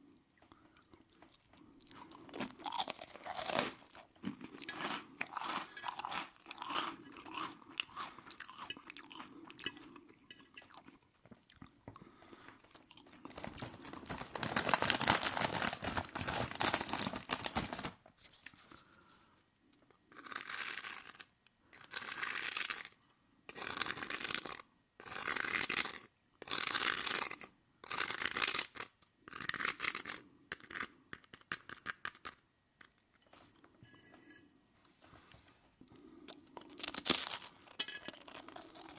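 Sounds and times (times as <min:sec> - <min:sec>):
close chewing with mouth sounds: 0:00.0 - 0:14.7, 0:35.8 - 0:38.9.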